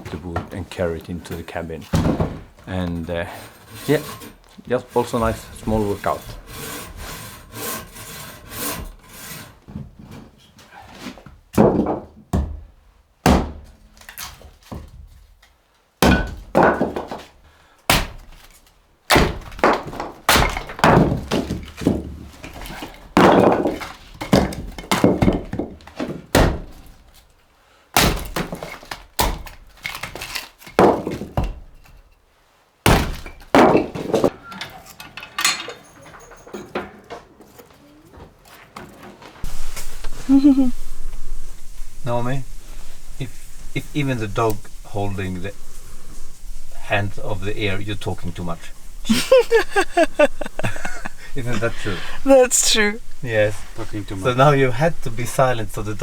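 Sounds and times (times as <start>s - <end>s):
axe chopping firewood: 13.3s - 14.3s, 16.0s - 17.2s, 17.9s - 18.5s, 19.1s - 26.9s, 28.0s - 31.6s, 32.9s - 34.3s.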